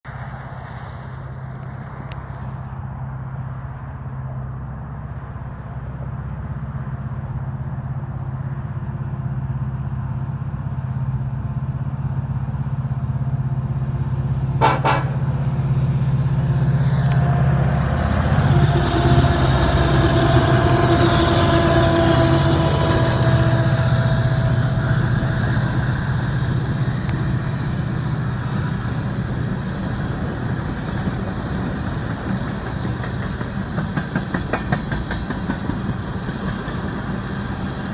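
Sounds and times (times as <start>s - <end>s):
diesel locomotive engine drone: 0.1s - 37.9s
locomotive air horn: 14.6s - 15.6s, 16.6s - 27.0s.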